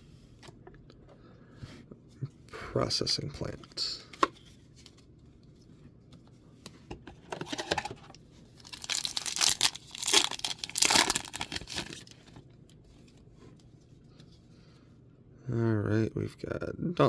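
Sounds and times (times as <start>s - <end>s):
plastic wrapper tearing and crinkling: 8.6s - 12.4s.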